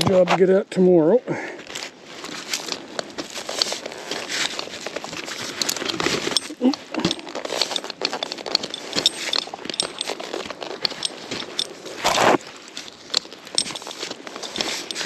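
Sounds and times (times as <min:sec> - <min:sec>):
metal climbing gear clinking: 0:01.6 - 0:15.0
scrapes and rustles of handling: 0:01.6 - 0:15.0.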